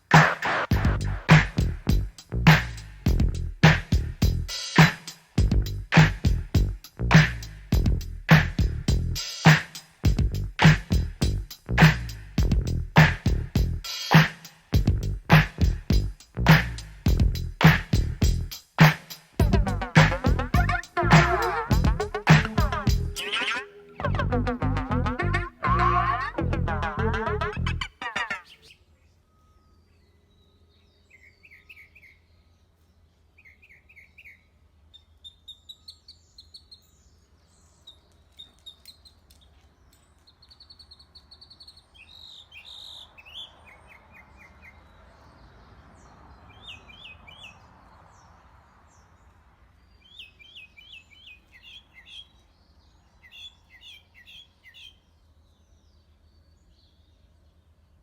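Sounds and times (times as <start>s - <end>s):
birds chirping and trilling: 19.6s - 58.0s.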